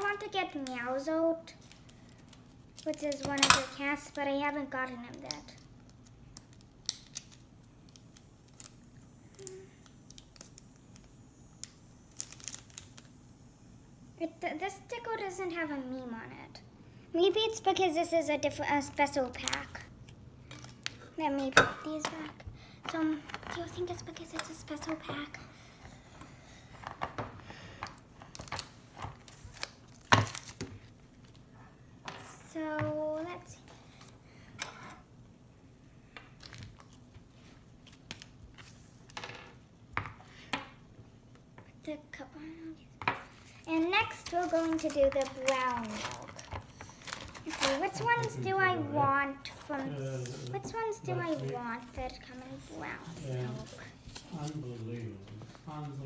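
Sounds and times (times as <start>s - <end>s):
plastic packaging clicks: 5.2s - 13.1s, 27.8s - 31.4s, 44.0s - 48.3s.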